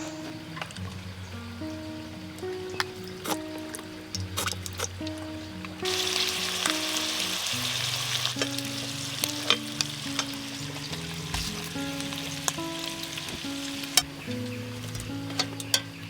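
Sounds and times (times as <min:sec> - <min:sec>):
crackling pops: 0:02.3 - 0:16.0
food sizzling in hot oil: 0:04.2 - 0:16.0.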